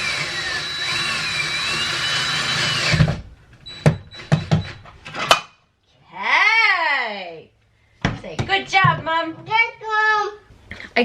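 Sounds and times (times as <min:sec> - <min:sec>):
power drill running: 0:00.0 - 0:04.8.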